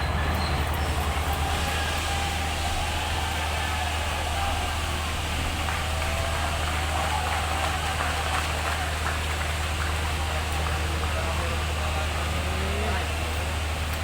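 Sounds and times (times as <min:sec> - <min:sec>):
bulldozer diesel engine running: 0:00.0 - 0:14.0.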